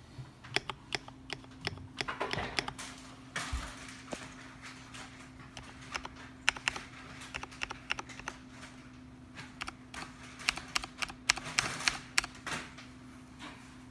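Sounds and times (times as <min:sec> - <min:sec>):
keyboard keystroke clacks: 0:00.5 - 0:02.9, 0:05.4 - 0:08.4, 0:09.5 - 0:12.4.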